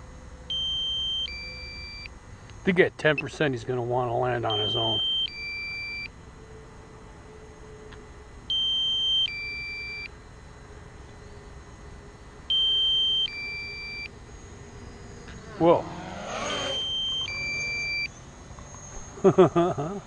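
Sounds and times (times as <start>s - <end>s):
electronic two-tone alarm beep: 0.5s - 2.1s, 4.4s - 6.1s, 8.5s - 10.1s, 12.5s - 14.1s, 16.4s - 18.1s.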